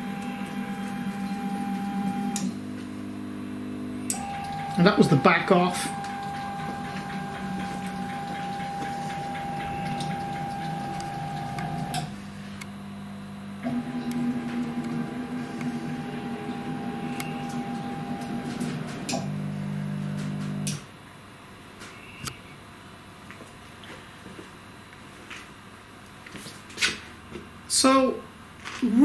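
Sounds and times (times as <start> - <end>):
stepper motor whine: 0.0 - 20.9.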